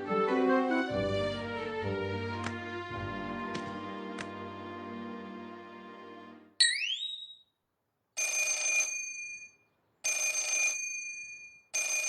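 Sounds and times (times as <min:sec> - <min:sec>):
cartoon telephone bell ringing: 0:08.2 - 0:12.0.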